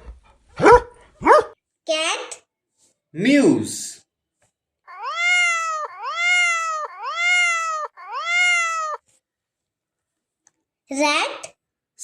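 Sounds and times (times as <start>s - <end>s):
cat meowing: 4.9s - 9.0s.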